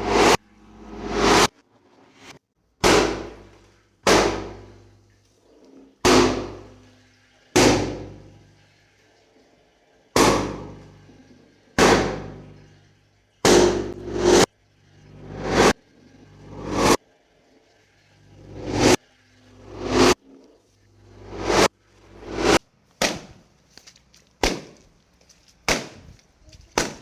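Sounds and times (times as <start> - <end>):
balloon pops: 25.6 - 26.0.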